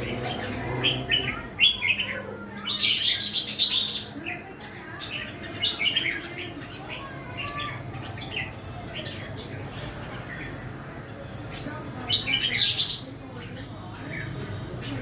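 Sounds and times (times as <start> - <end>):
songbirds chirping: 0.0 - 15.0.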